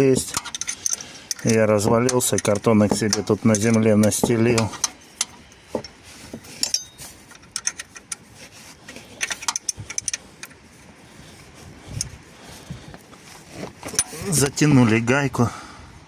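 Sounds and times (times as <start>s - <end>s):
metal spanner clicking on nut: 0.2s - 6.0s, 6.6s - 8.2s, 9.2s - 10.6s.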